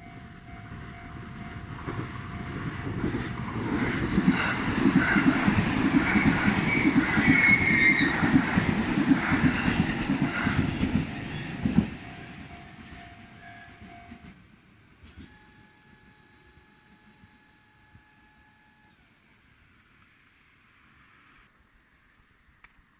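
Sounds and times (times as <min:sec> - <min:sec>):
faint steady tones: 0:00.0 - 0:22.9
train wheels clacking over rail joints: 0:02.8 - 0:13.2
high wheel squeal: 0:03.8 - 0:14.2.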